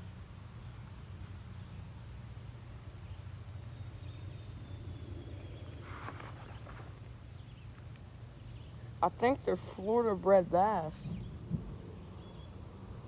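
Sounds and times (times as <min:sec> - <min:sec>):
steady low rumble: 0:02.0 - 0:07.5, 0:09.8 - 0:13.0
brief rustle: 0:05.8 - 0:07.1.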